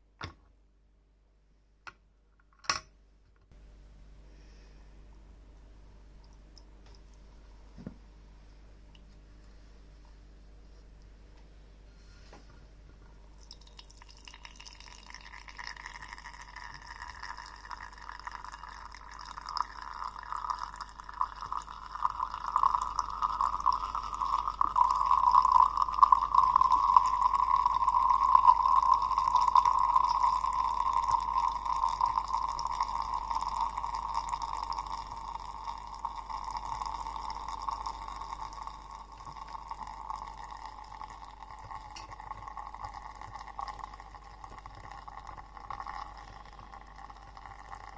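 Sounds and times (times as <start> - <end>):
liquid pouring into a vessel: 13.2 - 47.9.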